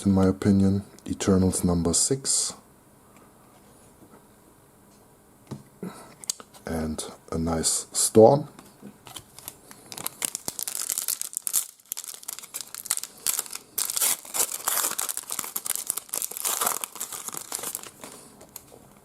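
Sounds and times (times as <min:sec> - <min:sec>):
wrapper tearing and crinkling: 0:09.1 - 0:18.6.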